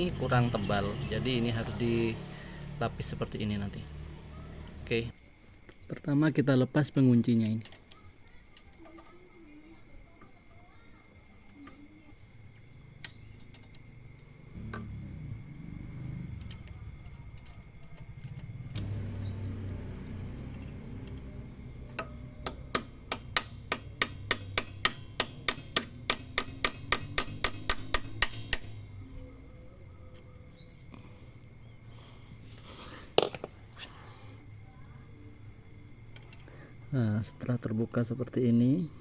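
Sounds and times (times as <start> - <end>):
sharp metal taps: 21.9 - 28.9.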